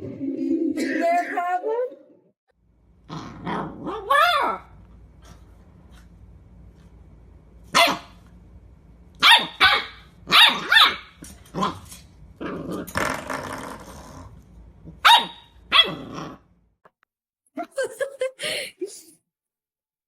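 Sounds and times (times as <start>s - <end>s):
dog barking: 7.7s - 8.2s, 9.2s - 11.1s, 15.0s - 16.0s.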